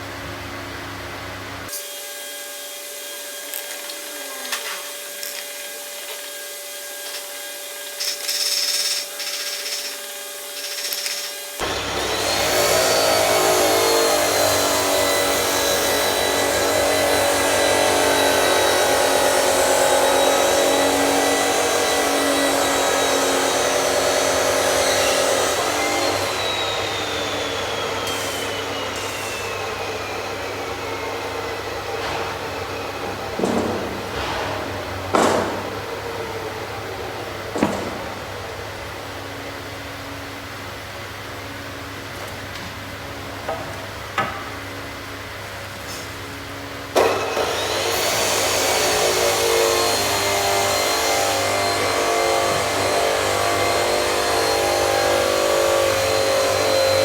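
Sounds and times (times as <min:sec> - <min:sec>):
quiet workshop sounds: 0:00.0 - 0:57.0
power tool motor whirring: 0:01.7 - 0:33.5.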